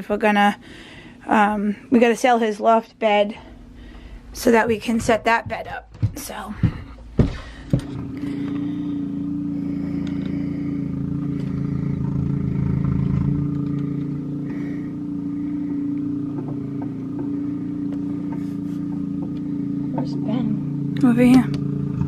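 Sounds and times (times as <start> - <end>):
snow blower engine running: 6.4 - 22.0.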